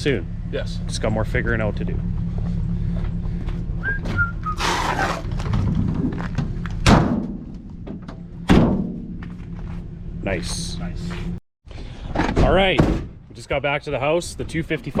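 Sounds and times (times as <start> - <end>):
steady low hum: 0.0 - 11.4
heavy thunks: 2.1 - 9.7, 12.1 - 13.2.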